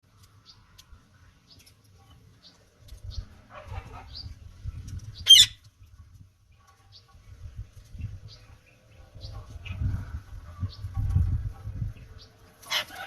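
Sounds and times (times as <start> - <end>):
parrot chirping: 5.2 - 5.6
parrot squawking harshly: 5.3 - 5.6.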